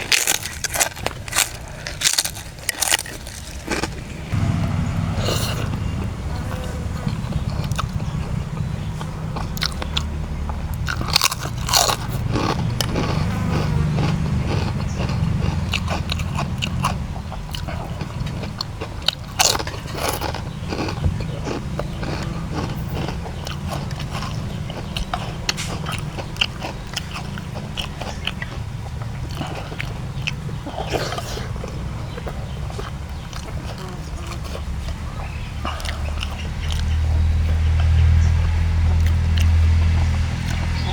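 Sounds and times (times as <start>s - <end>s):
crackers being crunched: 0.0s - 4.4s, 10.8s - 17.0s, 17.6s - 30.0s
steady low hum: 0.0s - 40.9s.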